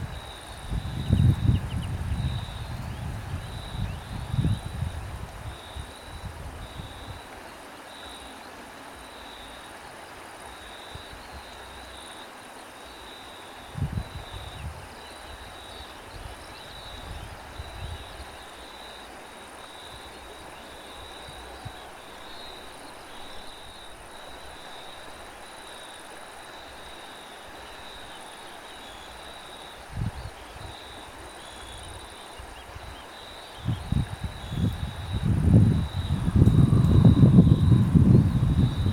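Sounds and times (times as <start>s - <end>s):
wind buffeting microphone: 0.0s - 7.3s, 13.7s - 18.4s, 29.9s - 38.9s
constant hiss: 0.0s - 38.9s
crickets chirping: 0.0s - 38.9s.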